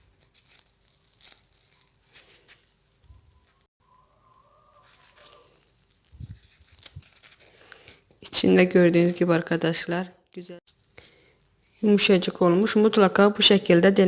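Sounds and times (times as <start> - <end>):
fried dough tearing and crinkling: 0.0 - 3.7, 4.6 - 8.1, 11.0 - 11.8.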